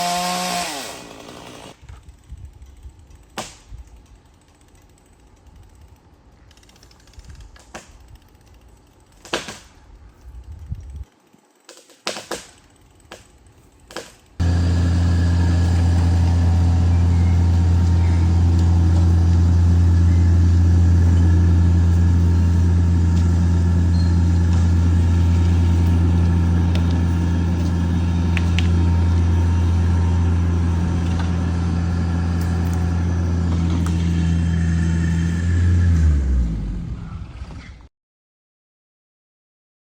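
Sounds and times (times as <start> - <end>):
engine running steadily: 14.4 - 37.6.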